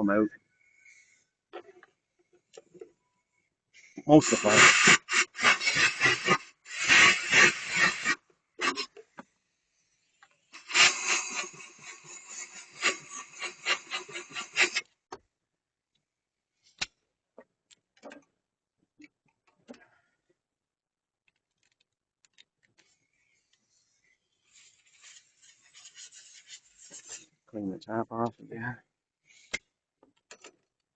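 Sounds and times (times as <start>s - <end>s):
compressed air hissing: 3.8s - 8.9s, 9.7s - 14.8s, 23.2s - 27.2s
faint rubbing: 22.9s - 27.3s.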